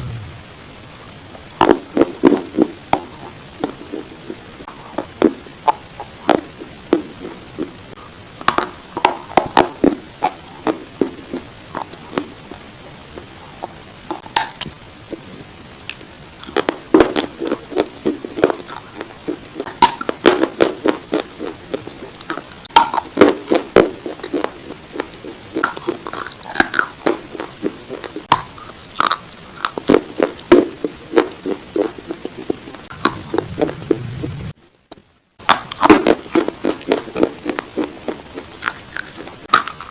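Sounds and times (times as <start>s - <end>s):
clay pieces crunching in chewing: 1.6s - 33.8s, 34.9s - 39.9s.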